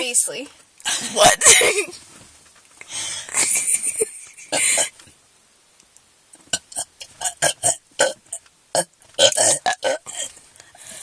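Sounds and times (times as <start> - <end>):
girl burping: 0.9 - 1.9, 6.6 - 10.3.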